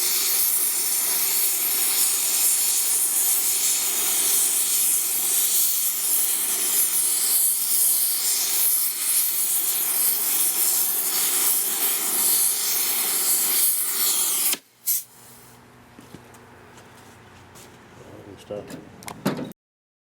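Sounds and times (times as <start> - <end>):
gas torch flame hissing: 0.0 - 15.6.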